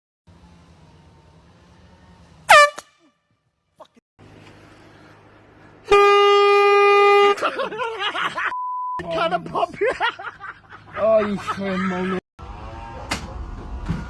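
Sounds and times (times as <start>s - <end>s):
air horn blast: 2.5s - 3.1s.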